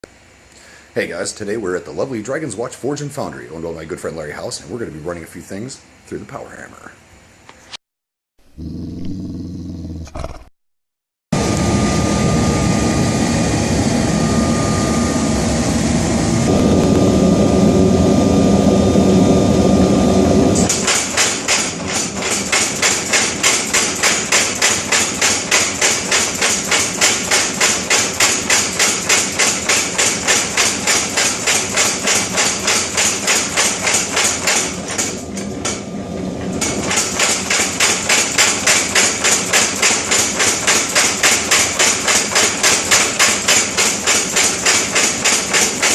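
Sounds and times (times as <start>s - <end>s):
steady roar: 8.5s - 10.5s, 12.8s - 20.7s
power hammer striking hot steel: 20.6s - 35.8s, 36.4s - 45.9s.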